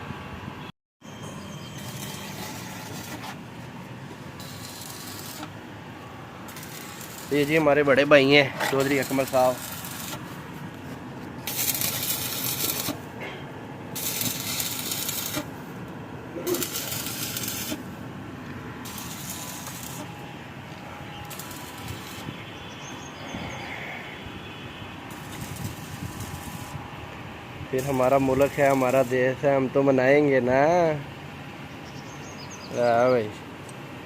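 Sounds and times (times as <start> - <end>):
arc welding crackling: 1.7 - 13.1, 13.9 - 23.0, 25.0 - 26.8, 27.7 - 29.5.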